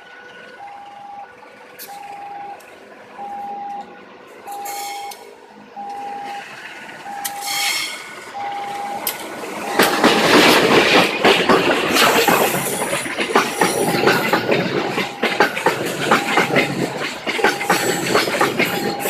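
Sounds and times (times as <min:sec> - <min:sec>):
electronic warning beeps: 0:03.2 - 0:05.2, 0:05.8 - 0:07.7, 0:08.4 - 0:10.1, 0:13.4 - 0:19.0
high wheel squeal: 0:04.4 - 0:05.2, 0:07.1 - 0:09.0
train wheels clattering over rail joints: 0:09.0 - 0:19.0.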